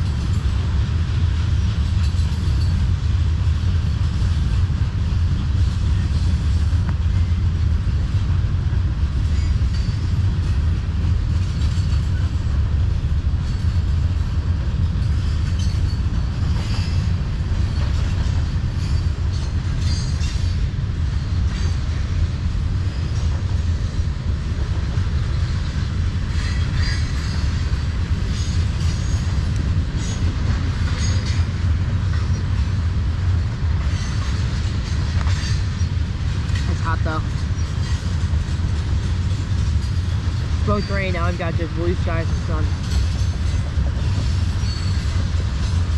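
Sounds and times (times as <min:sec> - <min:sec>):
train wheels rumbling on rail: 0:00.0 - 0:45.9.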